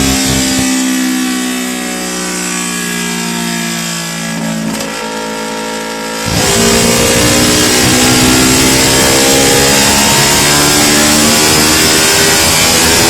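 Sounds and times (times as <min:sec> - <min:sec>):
motorcycle engine revving: 0:00.0 - 0:01.2, 0:04.0 - 0:13.0.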